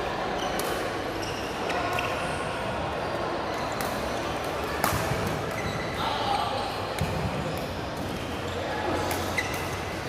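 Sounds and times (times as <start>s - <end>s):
shoe squeaks on court: 0.4s - 2.4s, 5.4s - 6.0s, 8.4s - 10.0s.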